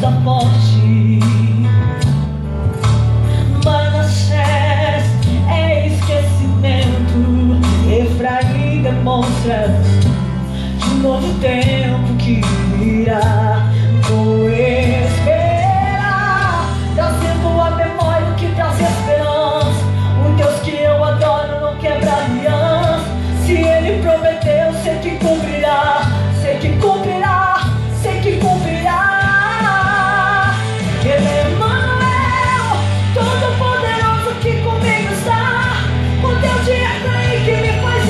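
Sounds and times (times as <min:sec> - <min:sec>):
woman singing: 0:00.0 - 0:02.2, 0:03.4 - 0:38.0
band playing: 0:12.5 - 0:38.0.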